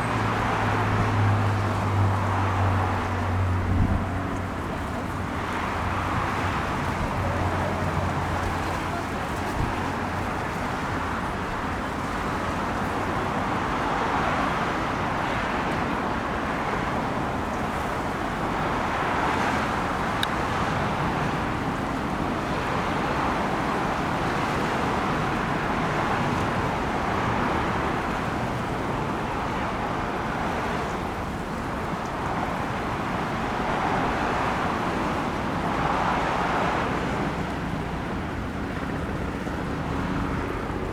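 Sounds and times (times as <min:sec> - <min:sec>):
road traffic noise: 0:00.0 - 0:40.9
vehicles passing: 0:00.0 - 0:40.9.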